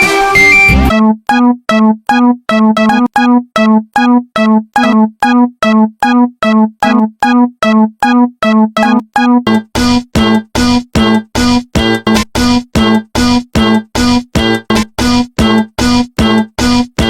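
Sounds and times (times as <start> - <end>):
music: 0.0 - 1.0, 8.8 - 17.0.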